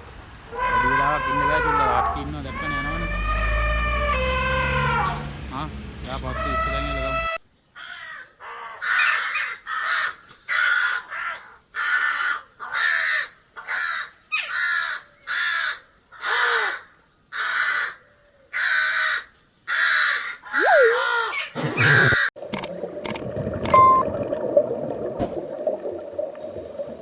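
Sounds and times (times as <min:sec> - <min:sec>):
crow cawing: 0:00.5 - 0:05.3, 0:06.2 - 0:22.3.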